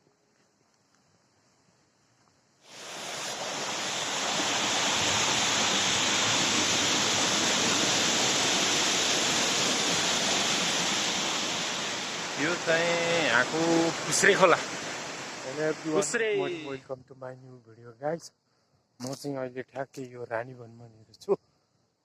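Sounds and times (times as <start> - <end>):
stream rushing: 2.7 - 16.8.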